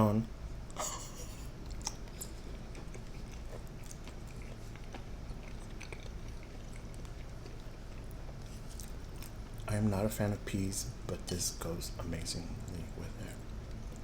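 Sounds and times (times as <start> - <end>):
steady low hum: 0.0 - 14.0
close chewing: 1.6 - 9.7.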